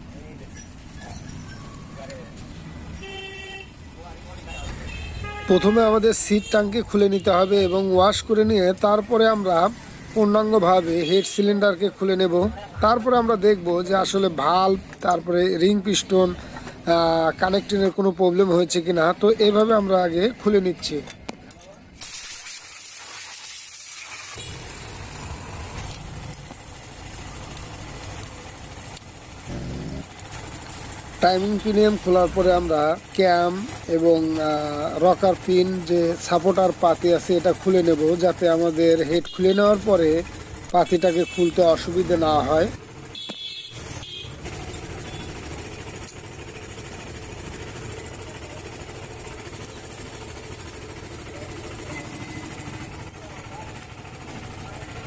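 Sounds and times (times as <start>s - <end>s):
high hiss: 22.0s - 24.4s
low engine rumble: 24.5s - 39.0s, 43.9s - 55.0s.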